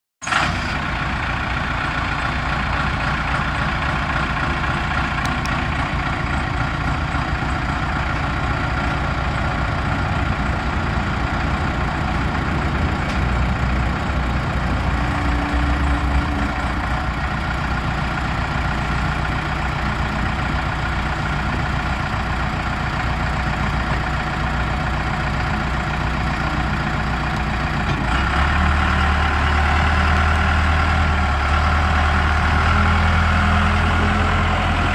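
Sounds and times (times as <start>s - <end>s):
diesel engine idling: 0.2s - 34.9s.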